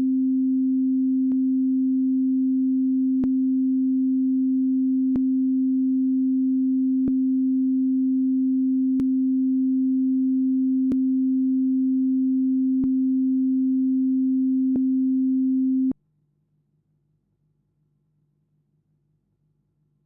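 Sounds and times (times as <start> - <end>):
steady sine-wave tone: 0.0 - 16.0.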